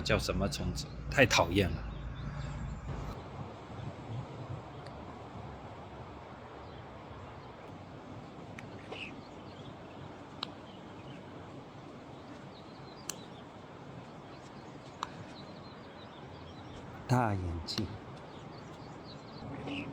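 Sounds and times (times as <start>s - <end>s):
faint bird chirps: 6.6s - 19.9s
sharp clicks: 13.0s - 13.3s.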